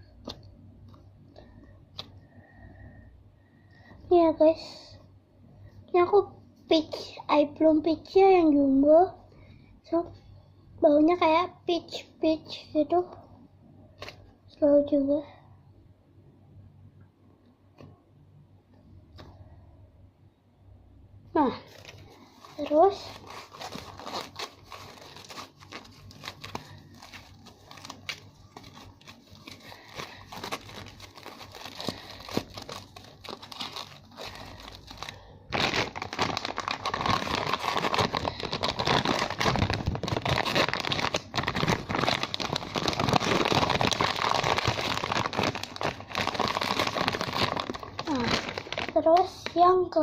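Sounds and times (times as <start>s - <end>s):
plastic packaging crinkling: 21.6s - 49.7s.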